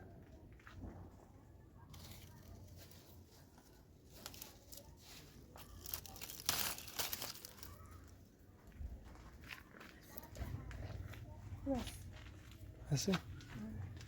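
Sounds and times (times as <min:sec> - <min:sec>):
crinkling rustling handling: 0:01.8 - 0:08.4.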